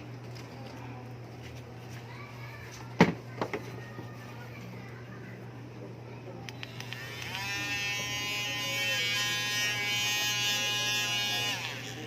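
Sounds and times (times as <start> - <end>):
power tool motor whining: 6.6 - 12.0.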